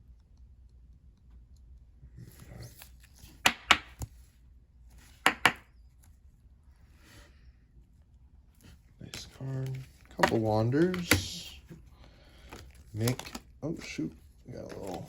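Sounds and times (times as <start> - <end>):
cards tapping on table: 3.4 - 4.1, 5.2 - 5.7, 10.2 - 11.4
cards rustling: 8.6 - 15.0.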